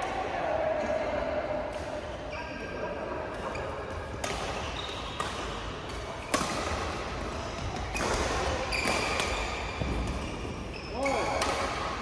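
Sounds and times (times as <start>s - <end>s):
sneaker squeaks on court floor: 3.5s - 5.6s, 7.6s - 11.6s
racket striking shuttlecock: 4.2s - 10.2s, 11.4s - 11.8s.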